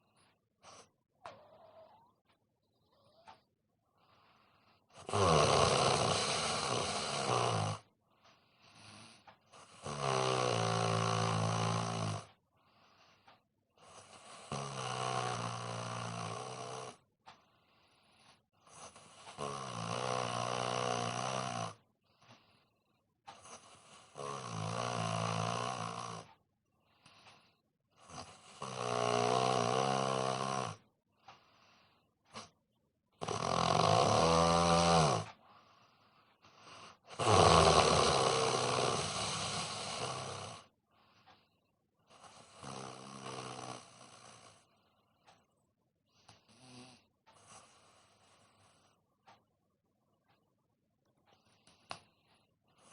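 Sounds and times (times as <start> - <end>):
faint breathing: 2.7 - 5.1, 12.5 - 14.2, 17.3 - 19.4, 21.8 - 24.2, 26.2 - 28.4, 31.1 - 32.6, 35.2 - 42.8, 44.3 - 49.4
man snoring: 4.9 - 7.9, 8.6 - 13.0, 13.8 - 17.1, 17.8 - 21.8, 23.3 - 26.4, 28.0 - 30.9, 33.2 - 40.7, 42.1 - 44.8, 46.4 - 49.0.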